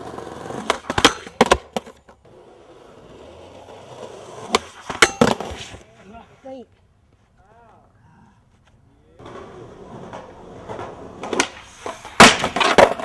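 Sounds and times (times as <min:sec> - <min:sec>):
skateboard clacks and landings: 0:00.0 - 0:02.2, 0:09.2 - 0:13.0
skateboard wheels rolling on pavement: 0:00.0 - 0:07.4, 0:08.6 - 0:13.0.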